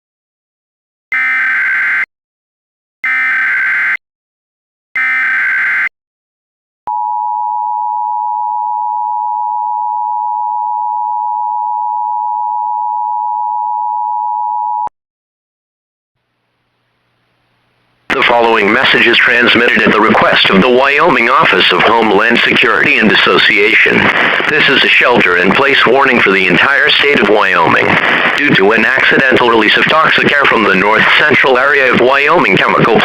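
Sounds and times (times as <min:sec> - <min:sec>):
digital data bursts: 0:01.1 - 0:02.1, 0:03.0 - 0:04.0, 0:05.0 - 0:05.9
two-tone attention signal: 0:01.1 - 0:02.1, 0:03.0 - 0:04.0, 0:05.0 - 0:05.9.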